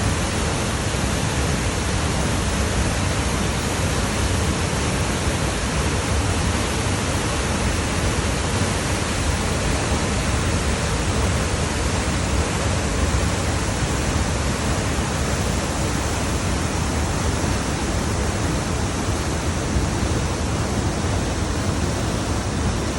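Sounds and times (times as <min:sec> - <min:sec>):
waterfall rushing: 0:00.0 - 0:22.9.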